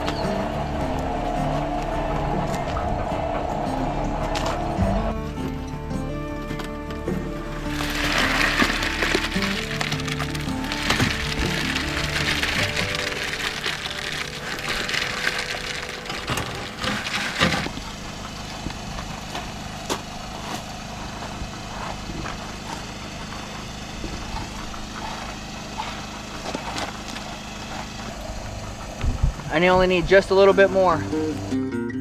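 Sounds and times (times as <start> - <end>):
low engine hum: 0.0 - 31.6
wet concrete scraping from wheelbarrow: 7.4 - 28.9.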